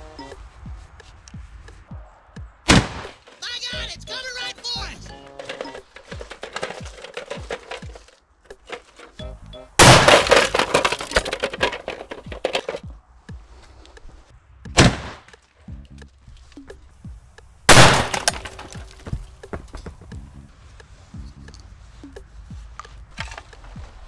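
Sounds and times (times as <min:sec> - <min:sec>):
shotgun shots: 0:09.8 - 0:11.8, 0:17.7 - 0:19.9.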